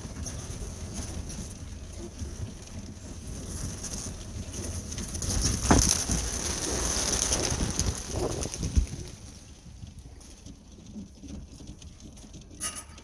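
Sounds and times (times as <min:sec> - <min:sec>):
pigeon wings flapping: 0:03.8 - 0:12.4.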